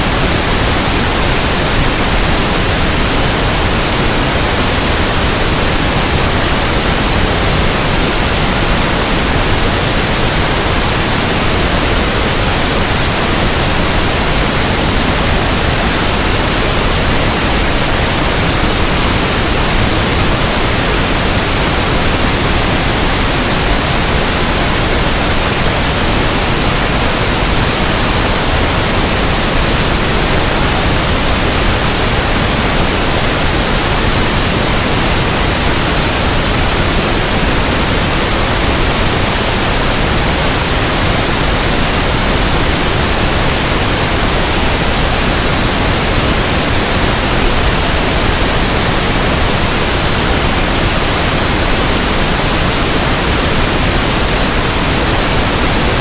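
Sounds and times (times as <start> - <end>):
pink noise hiss: 0.0 - 56.0.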